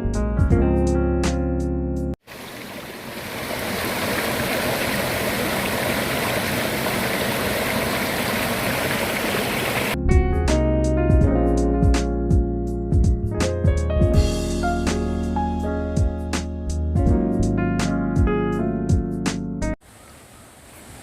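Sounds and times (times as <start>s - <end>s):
piano and guitar music: 0.0s - 2.2s, 10.0s - 19.8s
stream rushing over rocks: 2.2s - 10.0s.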